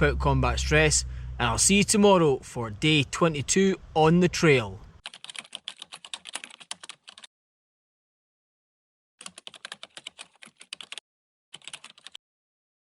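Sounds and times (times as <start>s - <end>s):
rapid key clicks: 5.0s - 7.3s, 9.2s - 11.0s, 11.6s - 12.2s.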